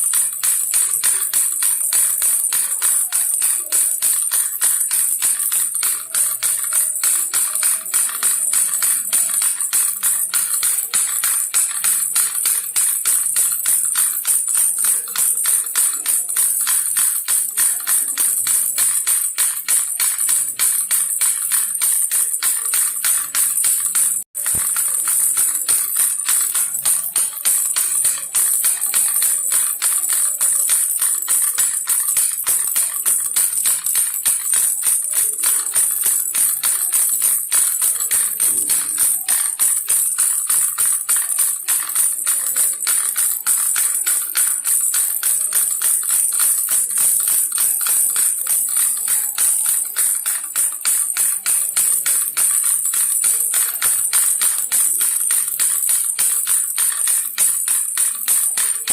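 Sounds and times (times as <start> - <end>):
baby rattle jingling: 0.0 - 58.9.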